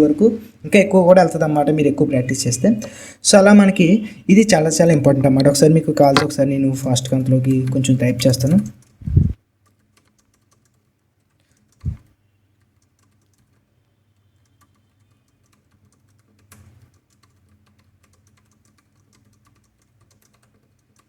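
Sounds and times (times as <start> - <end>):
keyboard typing clicks: 5.2 - 21.0.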